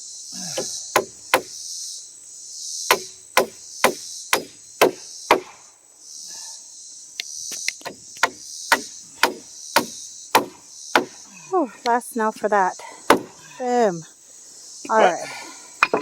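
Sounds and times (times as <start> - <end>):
insects trilling: 0.0 - 16.0
hammer driving nails into wood: 0.6 - 1.5, 2.9 - 5.6, 7.8 - 11.2, 13.1 - 13.3.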